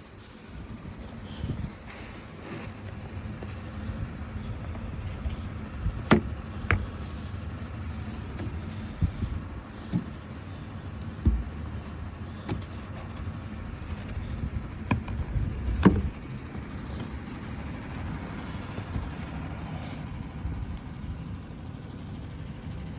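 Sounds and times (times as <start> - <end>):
vehicle engine rumbling: 0.0 - 22.9
short knocks: 3.4 - 7.0, 8.3 - 12.8, 14.8 - 16.2.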